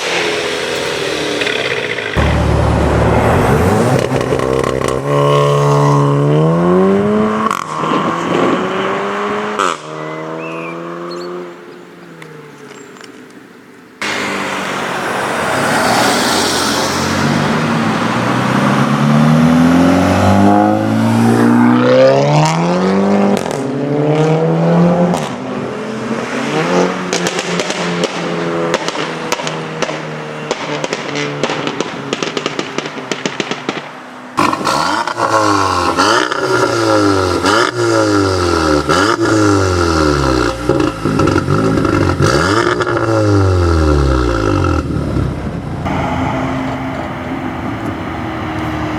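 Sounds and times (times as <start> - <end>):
car engine revving: 0.0 - 12.3, 14.0 - 48.9
exhaust pops and crackles: 1.4 - 5.5, 23.3 - 23.7, 27.1 - 46.0.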